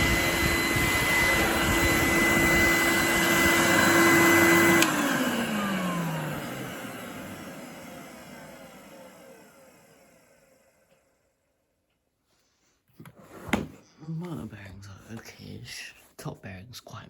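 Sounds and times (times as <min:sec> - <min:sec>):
vacuum cleaner motor whining: 0:00.0 - 0:11.5.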